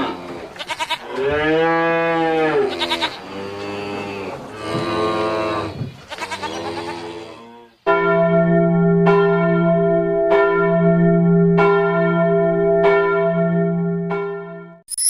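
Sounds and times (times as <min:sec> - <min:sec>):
church bell tolling: 0:07.9 - 0:14.8.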